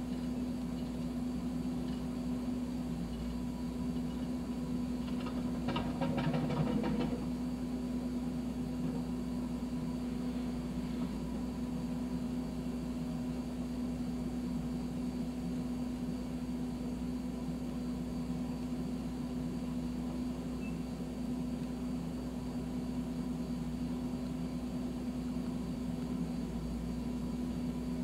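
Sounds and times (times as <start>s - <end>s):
rattling and clanking: 5.1s - 7.3s.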